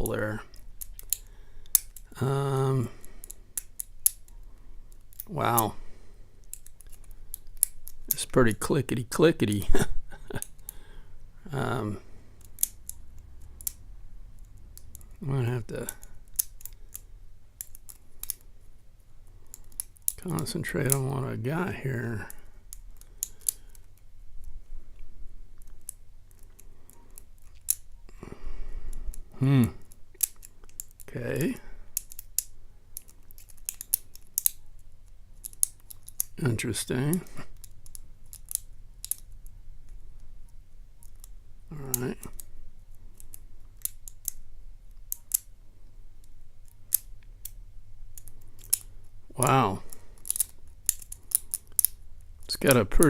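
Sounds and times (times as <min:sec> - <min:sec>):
lock pick metallic clicks: 0:00.5 - 0:02.1, 0:06.4 - 0:08.3, 0:12.4 - 0:15.2, 0:15.8 - 0:18.4, 0:29.8 - 0:34.7, 0:35.4 - 0:36.4, 0:37.6 - 0:40.0, 0:43.2 - 0:45.5, 0:46.2 - 0:49.2, 0:49.9 - 0:52.9.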